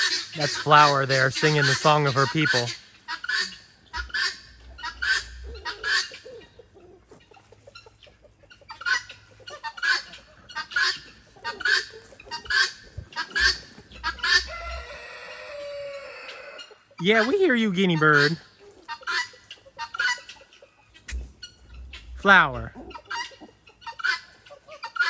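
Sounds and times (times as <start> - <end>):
guinea fowl calling: 0.0 - 25.0.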